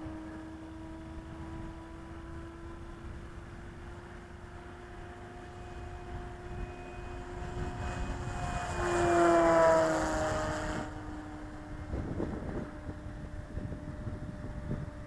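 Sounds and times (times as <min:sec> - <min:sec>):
model airplane motor whine: 0:00.0 - 0:15.0.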